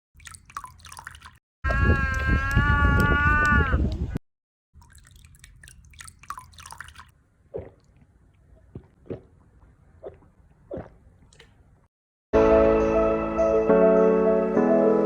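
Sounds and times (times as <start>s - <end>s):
drops falling into water: 0.2s - 2.2s, 4.8s - 9.4s, 10.0s - 11.6s
water splashing: 0.2s - 2.2s, 4.8s - 11.7s.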